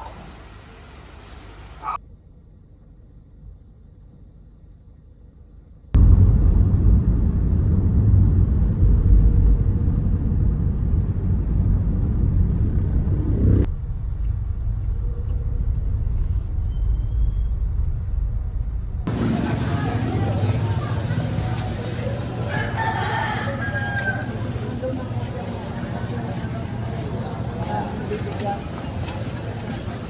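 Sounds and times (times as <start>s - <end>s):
road vehicle rumble: 6.0s - 30.0s.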